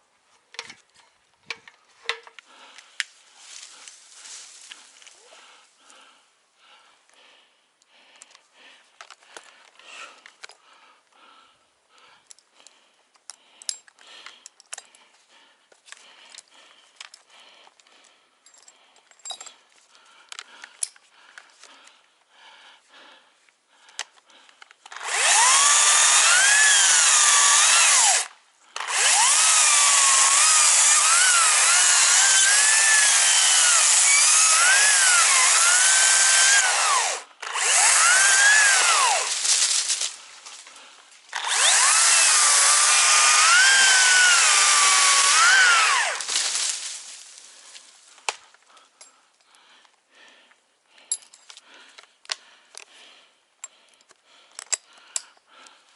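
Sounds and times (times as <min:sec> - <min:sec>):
chainsaw cutting wood: 0:24.9 - 0:48.5.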